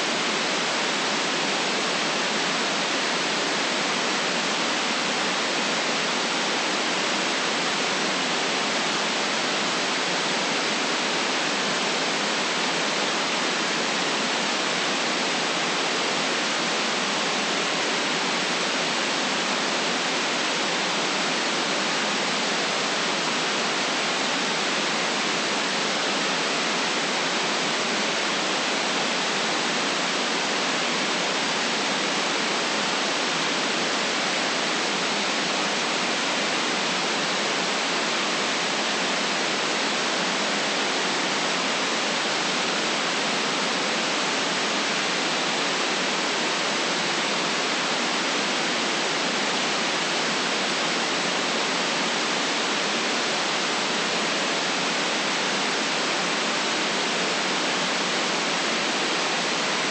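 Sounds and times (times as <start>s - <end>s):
electronic white noise hiss: 0.0s - 59.9s.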